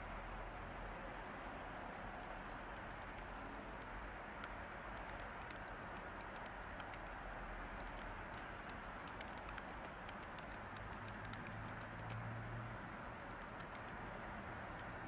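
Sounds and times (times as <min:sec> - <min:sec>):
white-noise hiss: 0:00.0 - 0:15.0
computer keyboard keystrokes: 0:02.4 - 0:12.2, 0:13.2 - 0:14.0.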